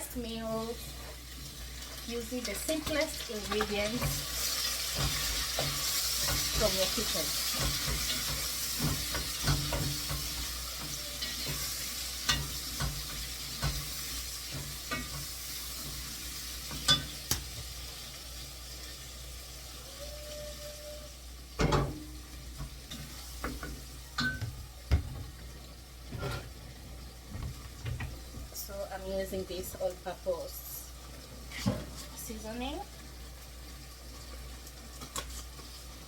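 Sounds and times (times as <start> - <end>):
food sizzling in a pan: 0.0 - 36.0
spoon knocking against pan: 7.5 - 11.6, 23.4 - 25.1.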